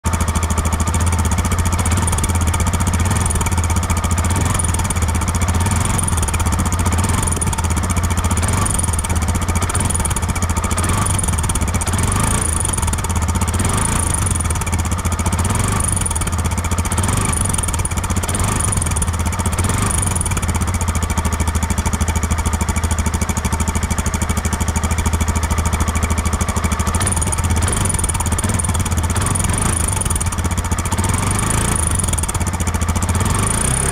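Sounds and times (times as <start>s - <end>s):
vehicle engine idling: 0.0s - 33.9s.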